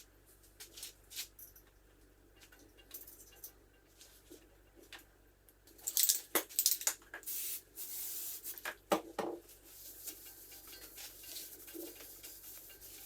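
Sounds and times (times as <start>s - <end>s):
spraying hiss: 7.3s - 8.6s.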